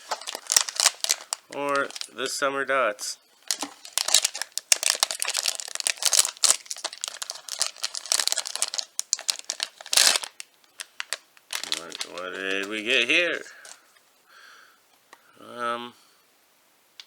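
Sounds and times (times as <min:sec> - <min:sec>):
packaging torn and crinkled: 0:00.0 - 0:02.1, 0:03.4 - 0:13.0.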